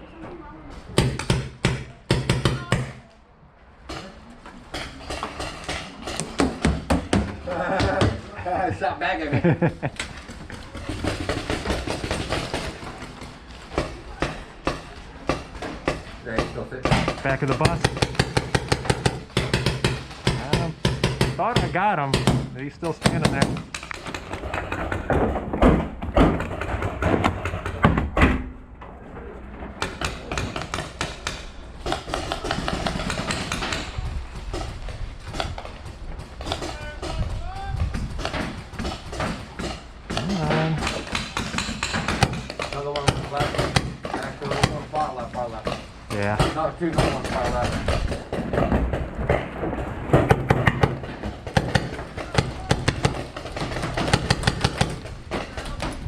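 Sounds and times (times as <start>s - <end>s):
paintball markers firing: 50.3s - 55.1s.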